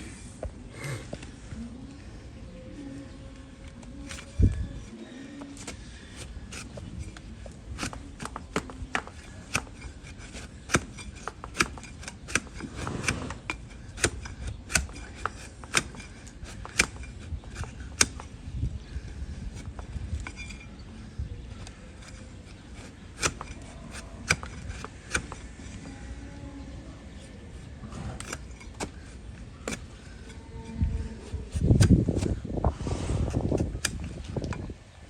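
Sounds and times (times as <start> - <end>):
tool scraping hoof: 4.0 - 20.9, 21.5 - 26.1, 27.1 - 34.7
hoof trimming tool snaps: 31.8 - 32.3.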